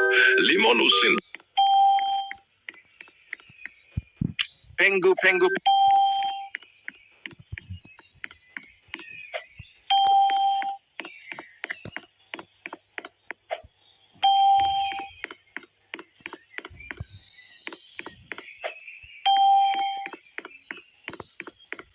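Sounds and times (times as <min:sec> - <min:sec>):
electronic beep tone: 0:00.0 - 0:02.4, 0:05.2 - 0:06.5, 0:09.9 - 0:10.8, 0:14.2 - 0:15.2, 0:19.3 - 0:20.2
quick sharp clicks: 0:02.2 - 0:04.6.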